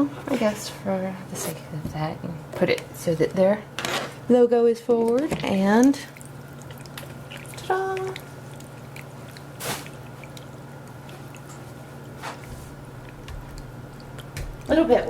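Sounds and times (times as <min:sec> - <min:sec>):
low pump hum: 0:00.0 - 0:15.0
water trickling: 0:04.7 - 0:15.0
splash: 0:09.6 - 0:10.0.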